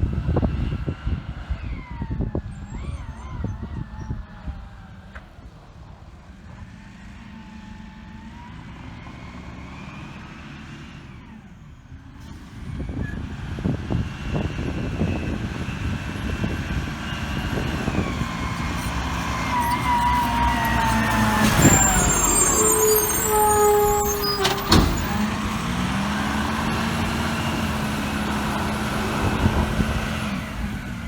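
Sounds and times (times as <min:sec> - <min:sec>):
garbage truck engine: 0:07.1 - 0:31.0
high squealing tones: 0:17.7 - 0:25.5
clattering: 0:18.7 - 0:25.3.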